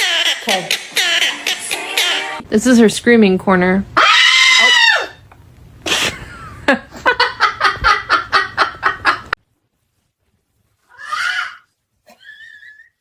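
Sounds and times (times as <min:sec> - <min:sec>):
parrot screaming and squawking: 0:04.0 - 0:05.3, 0:10.9 - 0:11.7.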